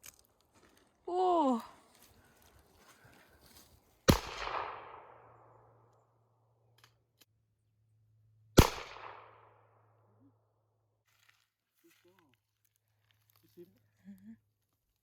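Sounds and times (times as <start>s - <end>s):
loud sharp bangs with echo: 4.1s - 5.2s, 8.6s - 9.5s.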